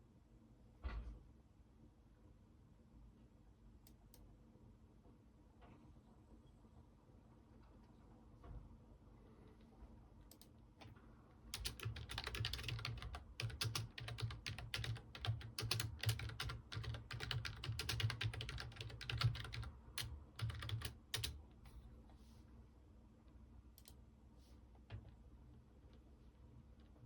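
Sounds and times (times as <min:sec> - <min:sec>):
computer keyboard typing: 0:11.5 - 0:21.4.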